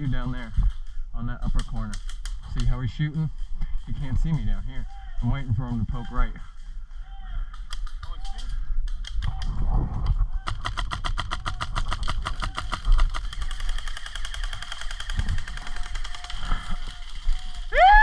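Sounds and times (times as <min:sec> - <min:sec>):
airsoft rifle firing full auto: 0:10.6 - 0:17.7.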